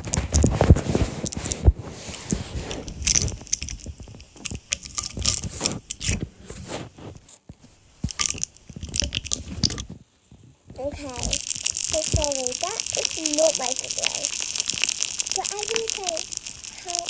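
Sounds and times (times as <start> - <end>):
handling clicks and scrapes: 0.0 - 12.3.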